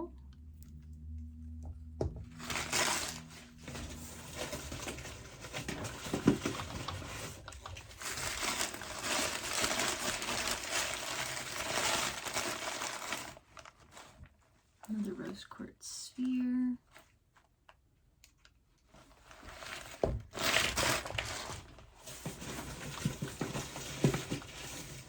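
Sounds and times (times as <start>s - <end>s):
paper crinkling and rustling: 2.3s - 15.0s, 18.9s - 25.0s.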